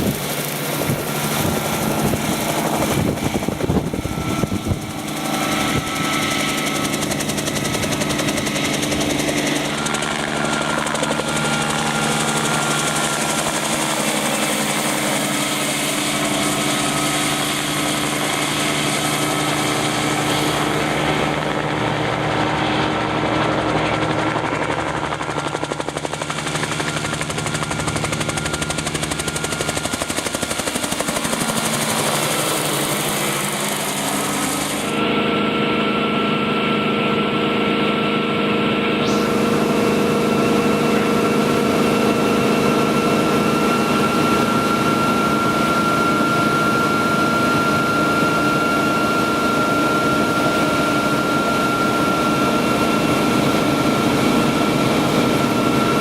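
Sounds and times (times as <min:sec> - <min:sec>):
helicopter piston engine drone: 0:00.0 - 0:56.0
rotor blades chopping: 0:25.9 - 0:35.0.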